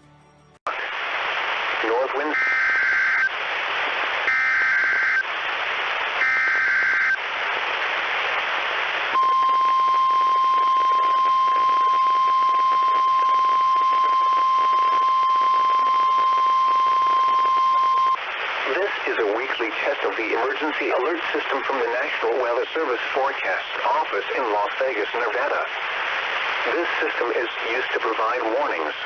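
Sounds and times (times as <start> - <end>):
radio hiss: 0.7 - 29.0
steady warning alarm tone: 2.3 - 3.3, 4.3 - 5.2, 6.2 - 7.2, 9.2 - 18.2.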